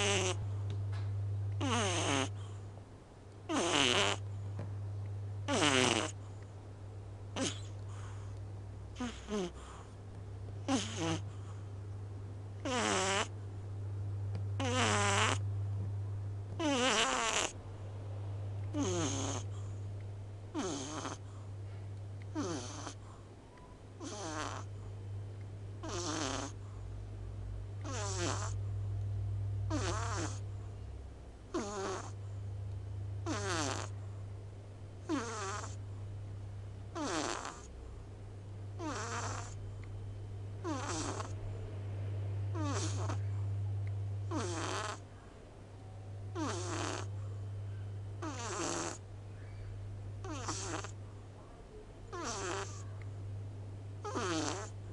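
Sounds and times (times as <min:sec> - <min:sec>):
cat snoring: 0:00.0 - 0:00.4, 0:01.6 - 0:02.6, 0:03.5 - 0:04.2, 0:05.5 - 0:06.3, 0:07.4 - 0:08.3, 0:08.9 - 0:09.9, 0:10.7 - 0:11.6, 0:12.6 - 0:13.3, 0:14.6 - 0:15.4, 0:16.6 - 0:17.6, 0:18.7 - 0:19.8, 0:20.5 - 0:21.4, 0:22.3 - 0:23.1, 0:24.0 - 0:24.7, 0:25.8 - 0:26.8, 0:27.8 - 0:28.6, 0:29.7 - 0:30.4, 0:31.5 - 0:32.2, 0:33.2 - 0:34.1, 0:35.0 - 0:35.8, 0:36.9 - 0:37.7, 0:38.8 - 0:39.6, 0:40.6 - 0:41.4, 0:42.5 - 0:43.4, 0:44.2 - 0:45.0, 0:46.3 - 0:47.3, 0:48.2 - 0:49.0, 0:50.2 - 0:51.0, 0:52.1 - 0:52.9, 0:54.0 - 0:54.8
steady low hum: 0:00.0 - 0:54.9.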